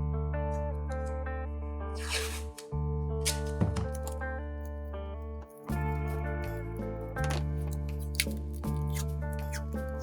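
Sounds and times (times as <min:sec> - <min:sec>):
music with sustained chords: 0:02.6 - 0:10.0.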